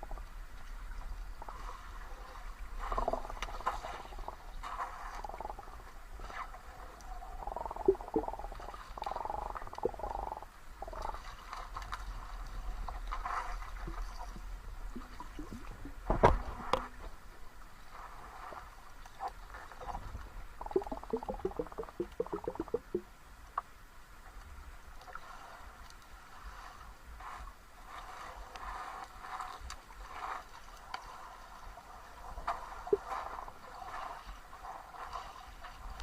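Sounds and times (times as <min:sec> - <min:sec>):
stream water gurgling: 0:00.0 - 0:23.3.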